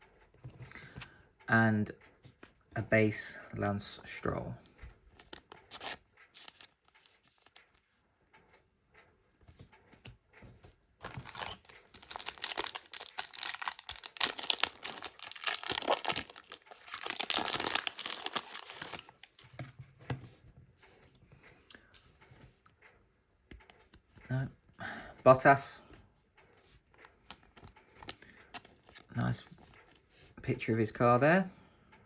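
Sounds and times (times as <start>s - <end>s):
foil wrapper tearing and crinkling: 5.7s - 6.6s, 11.0s - 19.3s.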